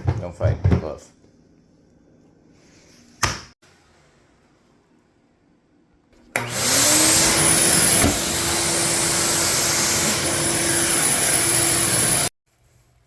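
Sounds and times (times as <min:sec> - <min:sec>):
shop vac motor whine: 0:06.3 - 0:12.3.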